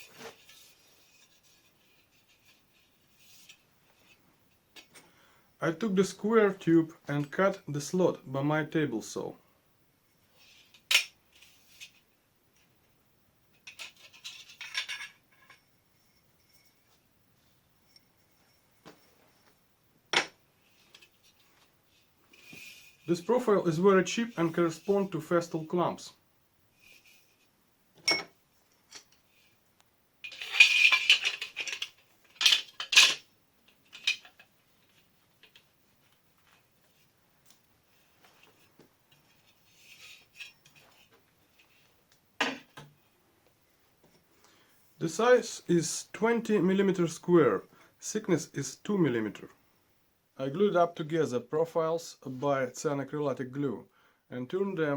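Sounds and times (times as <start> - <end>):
metal pieces clinking and scraping: 13.6 - 17.0, 30.2 - 35.6, 39.3 - 41.8.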